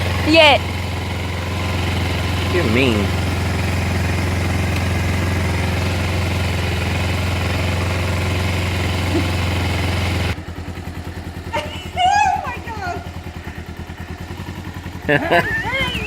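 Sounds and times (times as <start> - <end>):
motorcycle engine idling: 0.0 - 16.0.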